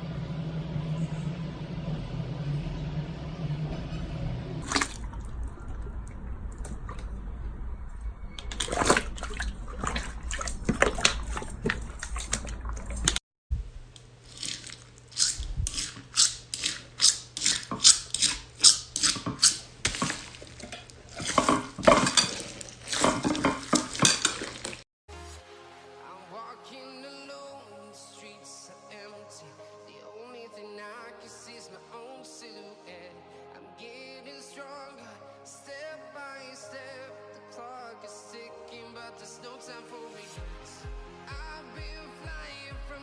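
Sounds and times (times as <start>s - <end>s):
slime squelching and popping: 14.2s - 24.8s
background music: 25.1s - 43.0s.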